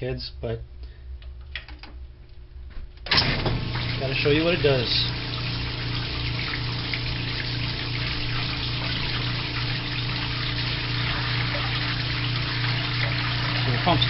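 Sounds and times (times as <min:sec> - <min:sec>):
washing machine motor hum: 0:03.0 - 0:14.0
water rushing and splashing: 0:03.3 - 0:14.0.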